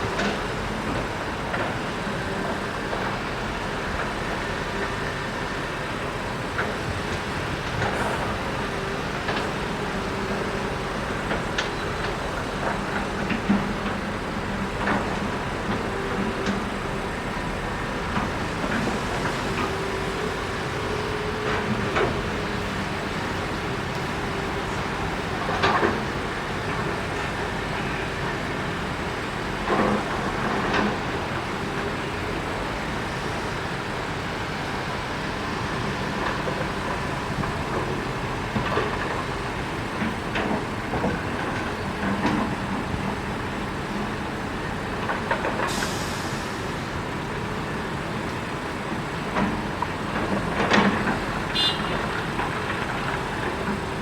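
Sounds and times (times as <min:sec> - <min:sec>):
heavy diesel machinery running: 0:00.0 - 0:54.0
short hiss: 0:45.8 - 0:46.5.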